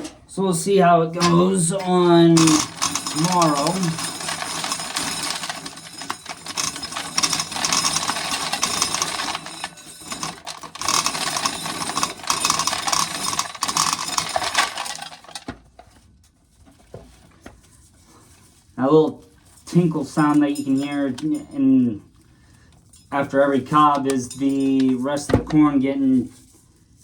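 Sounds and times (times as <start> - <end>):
kernels tinkling into tin can: 1.2 - 15.3
corn kernels rattling into pail: 1.2 - 15.6.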